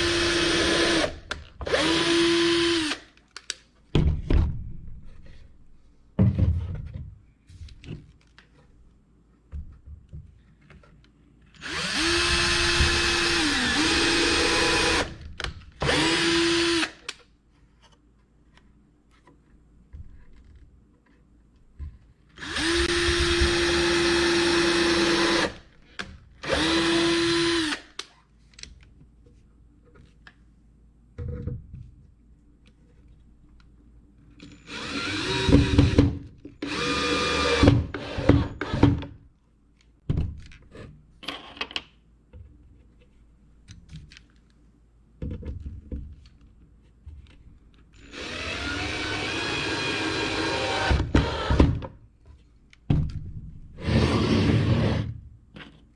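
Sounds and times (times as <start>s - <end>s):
power drill bursts: 48.0s - 51.6s.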